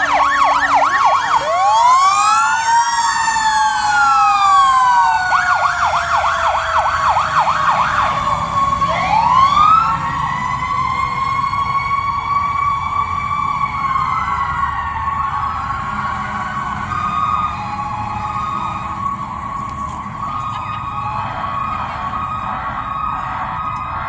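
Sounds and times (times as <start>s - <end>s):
electronic siren yelping and wailing: 0.0s - 11.7s
low falling siren tone: 0.0s - 24.0s.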